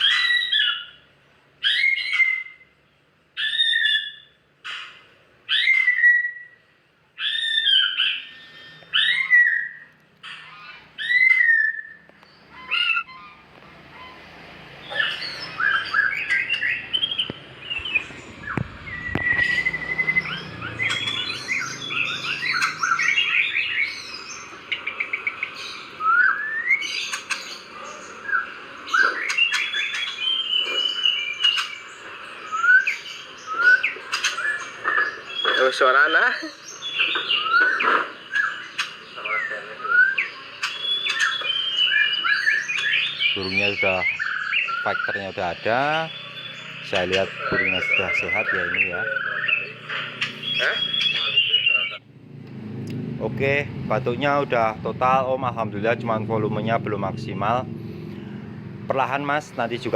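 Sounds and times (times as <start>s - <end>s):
bird chirping song: 0.0s - 59.9s
songbird calls: 1.6s - 2.8s, 3.4s - 6.6s, 7.2s - 52.0s.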